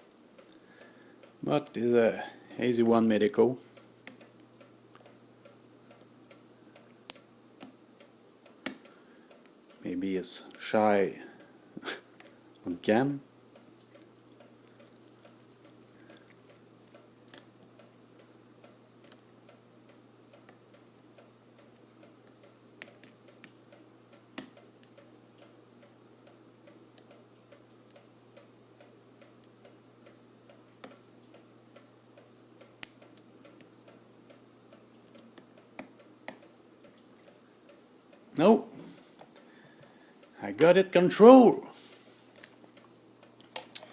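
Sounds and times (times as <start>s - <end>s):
lock picks ticking and scratching: 14.0s - 18.0s.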